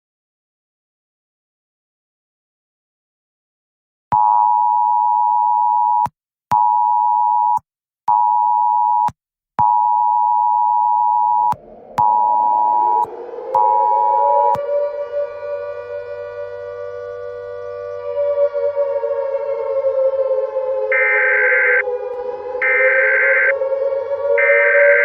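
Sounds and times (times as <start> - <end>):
civil defence siren winding up: 11.0 - 25.0.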